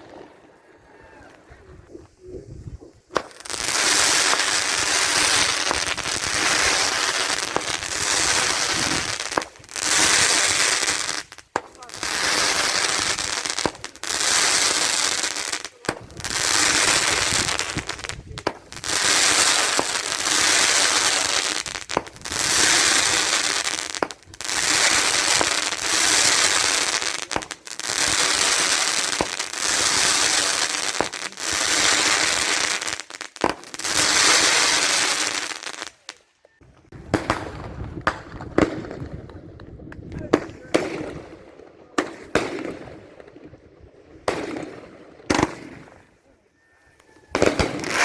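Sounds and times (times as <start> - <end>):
firework shots hissing and crackling: 1.8 - 36.2, 36.8 - 43.3, 44.2 - 46.1, 47.3 - 48.0
sharp firework crack: 3.0 - 36.1, 36.9 - 41.3, 44.3 - 46.0, 47.4 - 48.0.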